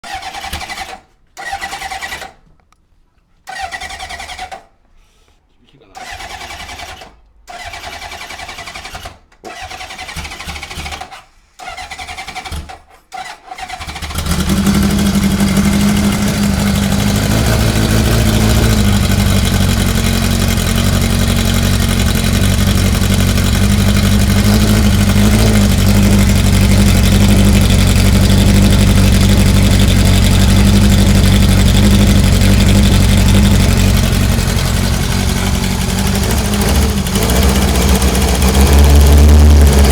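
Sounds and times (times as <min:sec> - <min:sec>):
motorcycle engine cranking: 0:00.1 - 0:02.4, 0:03.5 - 0:04.7, 0:06.0 - 0:39.9
motorcycle engine running: 0:14.0 - 0:39.9.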